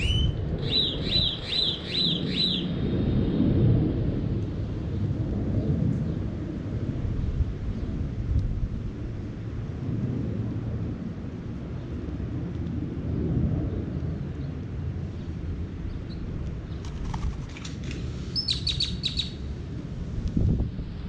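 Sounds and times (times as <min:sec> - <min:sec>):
songbird chirping: 0:00.0 - 0:02.8, 0:18.4 - 0:19.4
distant thunder rumble: 0:00.0 - 0:21.0.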